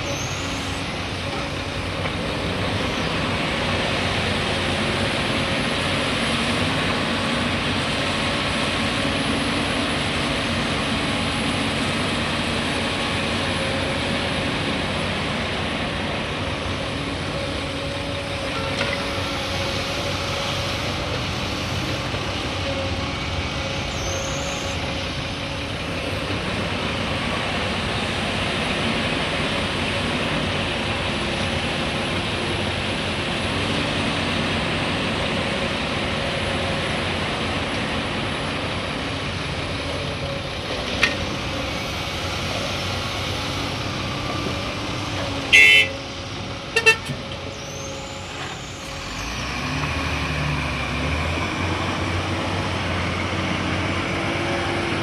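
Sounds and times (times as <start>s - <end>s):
heavy diesel machinery running: 0.0s - 55.0s
horn toots: 45.5s - 46.0s, 46.8s - 47.2s.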